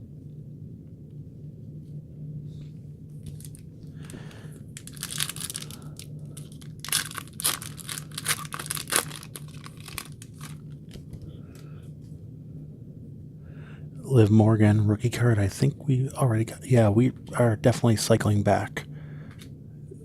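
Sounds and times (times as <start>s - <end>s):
foil wrapper tearing and crinkling: 4.8s - 11.1s.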